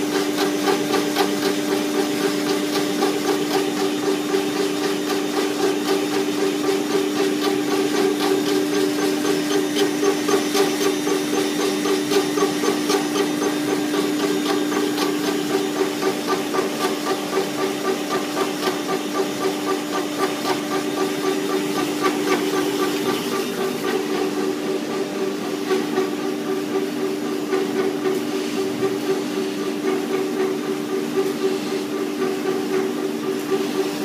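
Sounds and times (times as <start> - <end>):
machine motor hum: 0.0 - 34.0.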